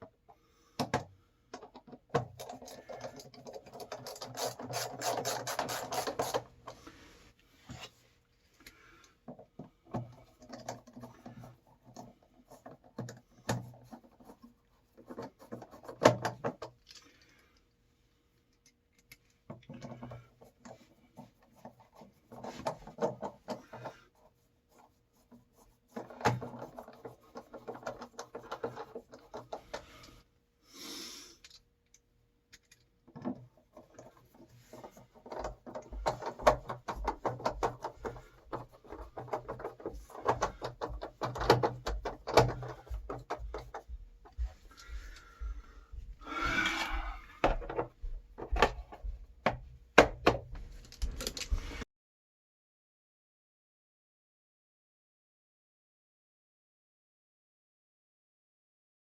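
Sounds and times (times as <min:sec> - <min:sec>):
handling rubbing and scraping: 0:02.3 - 0:08.5, 0:19.6 - 0:30.2, 0:33.2 - 0:45.2.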